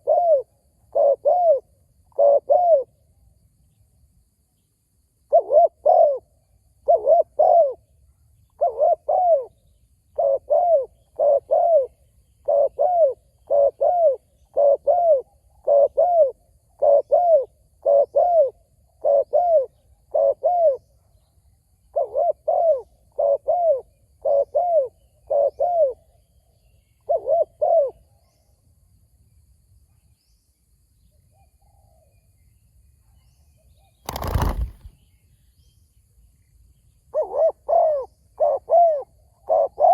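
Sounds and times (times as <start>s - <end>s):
dove cooing: 0.0s - 2.9s, 5.3s - 7.8s, 8.6s - 9.6s, 10.2s - 20.8s, 21.9s - 26.0s, 27.0s - 28.0s, 37.2s - 39.9s.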